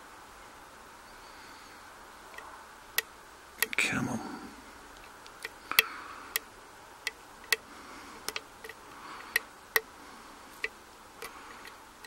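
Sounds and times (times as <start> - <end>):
lock pick clicking and scraping: 5.3 - 7.6, 8.3 - 9.9, 10.6 - 11.8.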